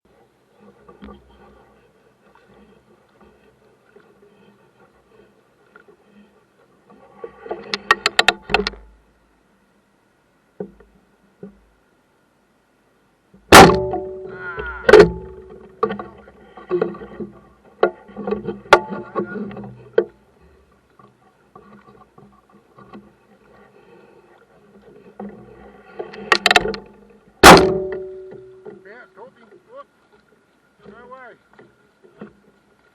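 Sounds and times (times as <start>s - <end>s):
sharp knocks and clanks: 13.5s - 17.0s, 17.8s - 20.1s, 26.3s - 28.9s.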